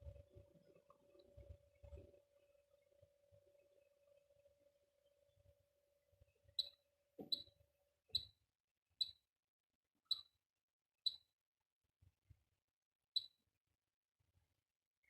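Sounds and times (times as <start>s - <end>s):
faint steady hum: 0.0s - 6.8s.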